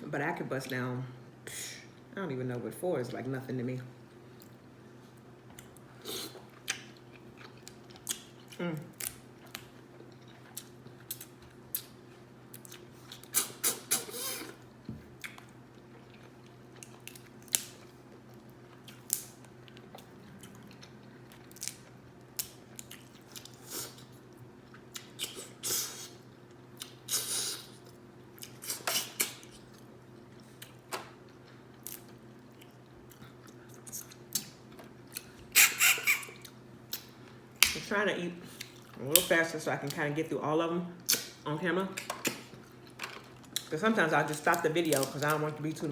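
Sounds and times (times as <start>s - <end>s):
steady low hum: 0.0s - 45.9s
wet chewing and smacking: 5.5s - 14.0s, 15.1s - 23.7s.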